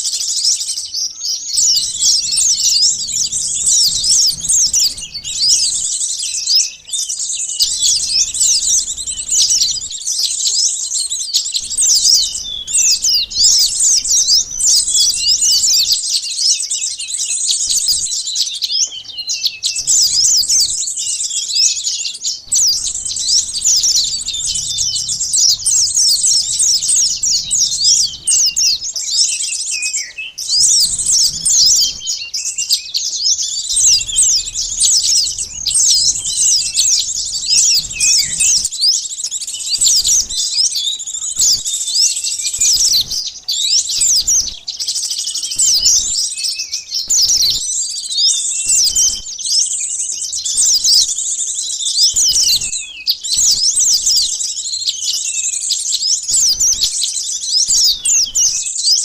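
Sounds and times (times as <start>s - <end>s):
small birds chirping: 0.0s - 59.0s.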